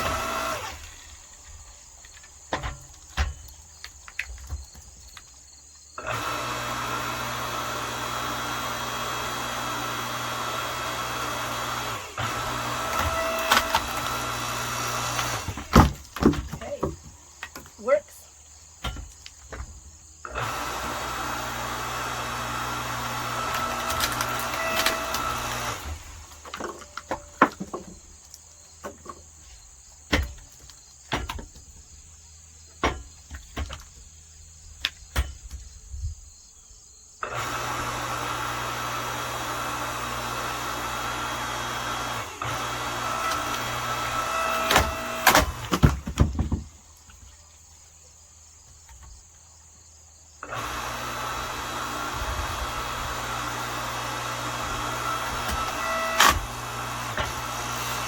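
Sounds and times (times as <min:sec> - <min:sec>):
log splitter motor humming: 0:00.0 - 0:04.7, 0:06.0 - 0:31.6, 0:37.2 - 0:46.8, 0:50.4 - 0:58.0
wood cracking: 0:00.0 - 0:05.5, 0:10.3 - 0:18.0, 0:18.6 - 0:34.1, 0:41.3 - 0:47.4, 0:50.6 - 0:58.0
wooden pieces knocking: 0:15.1 - 0:17.9, 0:26.3 - 0:32.0.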